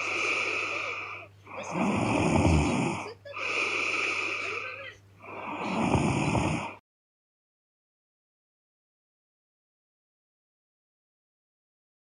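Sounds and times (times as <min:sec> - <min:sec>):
light breaths: 0:00.0 - 0:06.8
woman snoring: 0:00.0 - 0:06.8.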